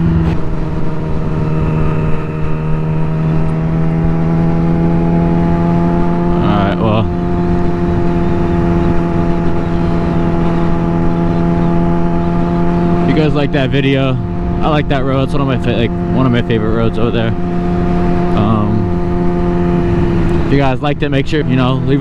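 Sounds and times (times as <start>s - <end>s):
wind noise: 0.0s - 15.3s
motorcycle engine at high revs: 0.0s - 22.0s.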